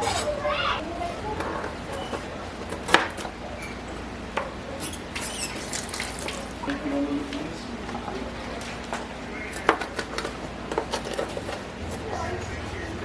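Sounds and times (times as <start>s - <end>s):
short high squeaks: 4.8s - 6.0s.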